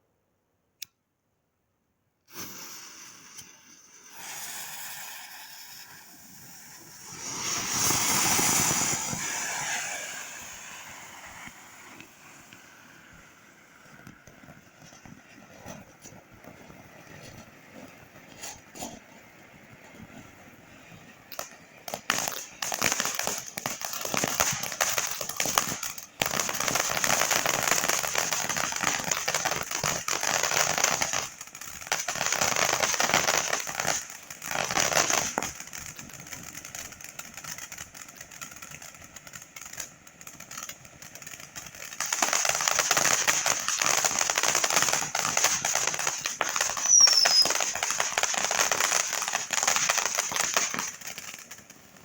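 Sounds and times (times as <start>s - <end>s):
fireworks crackling: 2.3s - 52.0s
falling whistle: 46.8s - 47.6s.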